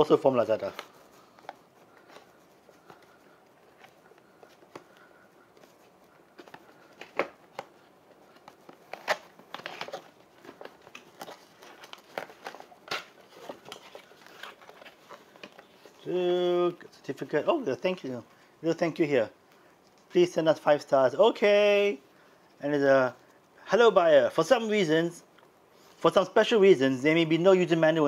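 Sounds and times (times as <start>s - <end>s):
packaging rustling and crinkling: 0.1s - 16.1s.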